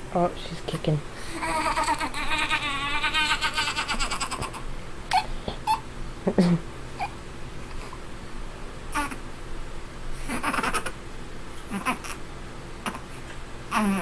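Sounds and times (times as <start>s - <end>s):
baby making stuttering pulses: 1.3s - 5.8s, 11.7s - 12.2s, 12.8s - 13.1s, 13.7s - 14.0s
baby squeaks and grunts: 13.7s - 14.0s.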